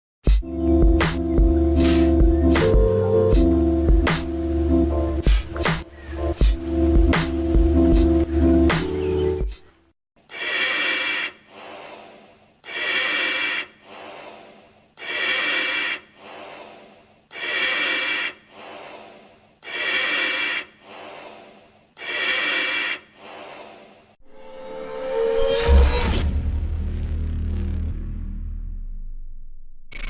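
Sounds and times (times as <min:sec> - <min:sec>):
breathing through gas mask: 0:10.4 - 0:24.2.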